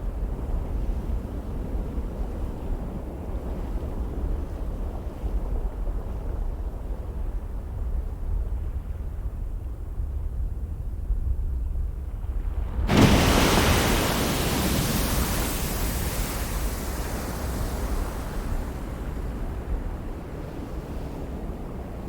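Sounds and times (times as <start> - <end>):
volcano deep rumble: 4.0 - 22.0
loud rushing hiss: 12.9 - 18.6.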